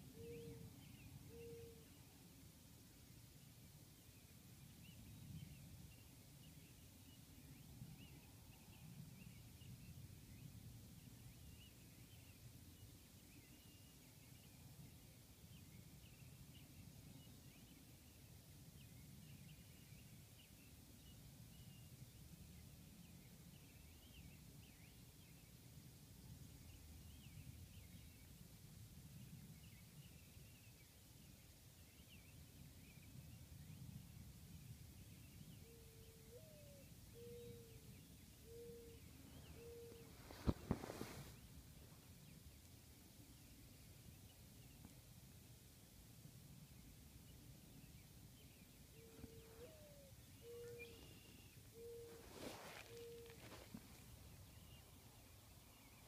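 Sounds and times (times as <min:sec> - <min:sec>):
birds chirping: 0:35.4 - 0:45.0, 0:46.8 - 0:56.0.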